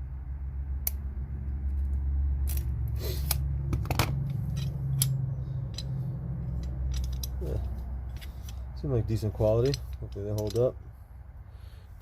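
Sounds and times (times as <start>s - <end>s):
steady low hum: 0.0s - 12.0s
metal wrench clicking: 4.1s - 10.8s.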